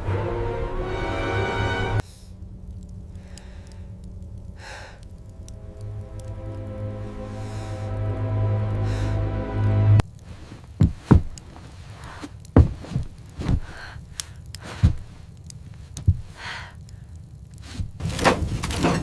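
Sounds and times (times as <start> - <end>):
music: 0.0 - 10.0
low rumble: 0.0 - 10.4
dull thuds and knocks: 10.8 - 11.4, 12.6 - 13.8, 14.7 - 15.1, 16.0 - 16.3.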